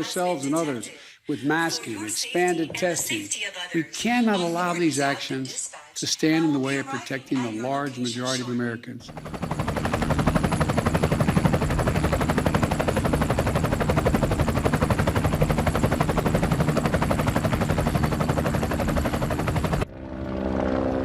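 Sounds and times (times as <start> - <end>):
low engine-like drone: 9.2 - 21.0.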